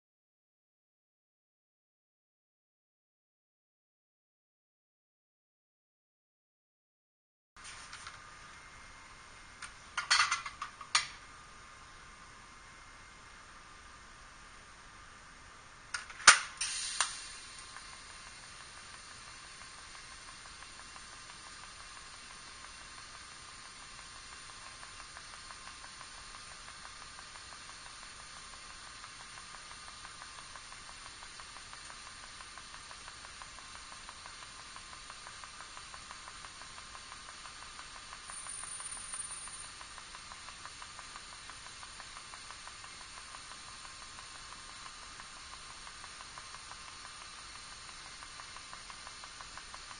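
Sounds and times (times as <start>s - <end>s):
welder arc hissing: 15.8s - 49.9s.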